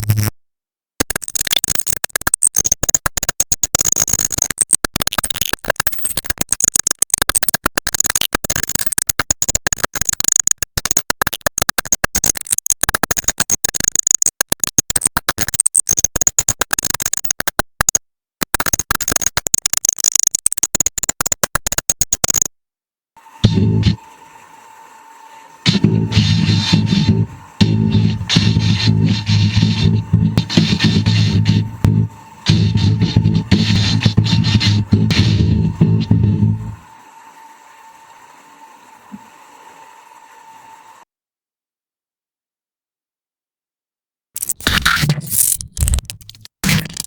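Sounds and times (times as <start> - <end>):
stuttering glitch crackle: 0.0 - 0.4, 1.0 - 22.5, 25.7 - 36.8, 44.4 - 47.0.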